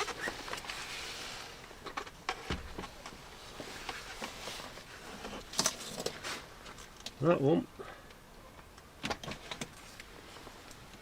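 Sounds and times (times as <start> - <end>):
soft rustle: 0.0 - 7.2, 9.7 - 11.0.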